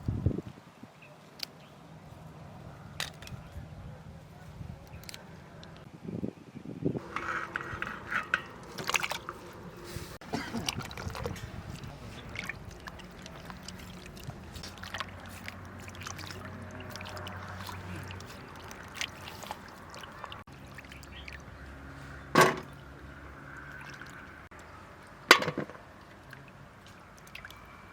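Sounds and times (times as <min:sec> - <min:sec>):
utensils clinking and knocking: 0:07.0 - 0:09.5
water pouring and sloshing: 0:07.0 - 0:27.9.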